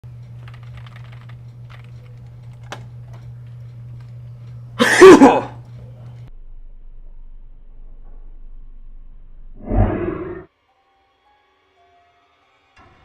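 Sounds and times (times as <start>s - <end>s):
person coughing: 4.8s - 5.6s.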